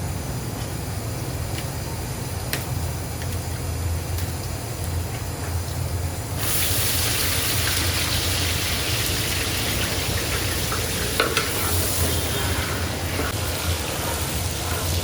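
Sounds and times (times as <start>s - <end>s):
food sizzling in hot oil: 5.8s - 15.0s.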